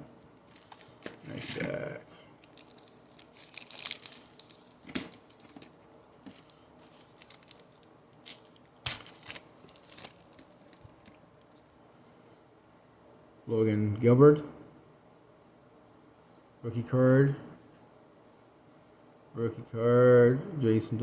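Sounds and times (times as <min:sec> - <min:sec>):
cards and wrapper rustling: 0:00.4 - 0:11.6
sharp wrapper snaps: 0:02.5 - 0:11.6.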